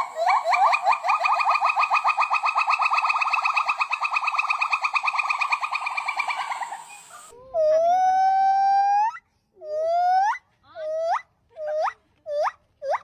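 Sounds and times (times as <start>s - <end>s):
monkey trilling call: 0.0s - 13.0s
monkey wailing: 7.5s - 13.0s.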